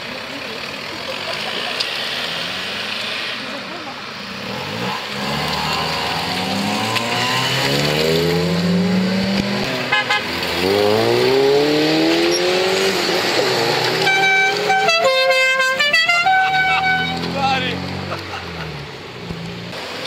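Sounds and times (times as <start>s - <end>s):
car engine revving: 0.0s - 20.0s
car horn: 9.7s - 11.0s, 13.9s - 17.8s.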